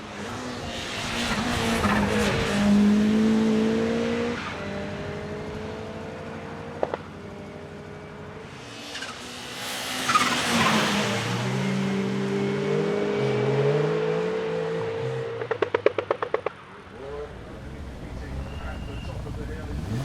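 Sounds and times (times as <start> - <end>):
rally car engine running hard: 17.0 - 20.0.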